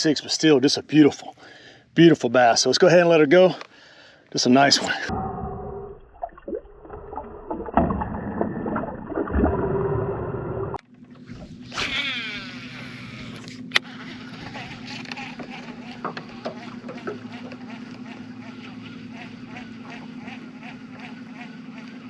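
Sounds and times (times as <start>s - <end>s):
low hum: 4.7s - 22.0s
water splashing in a boat: 6.0s - 10.2s, 14.3s - 21.6s.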